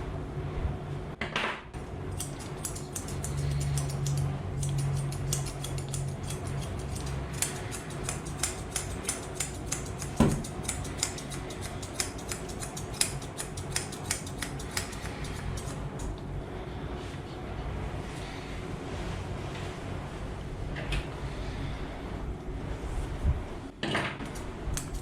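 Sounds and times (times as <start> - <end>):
scissors snipping fur: 2.1 - 16.2, 24.2 - 25.0.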